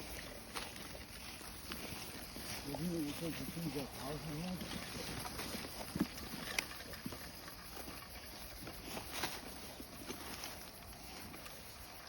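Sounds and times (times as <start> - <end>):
footsteps on a trail: 0.0 - 12.0.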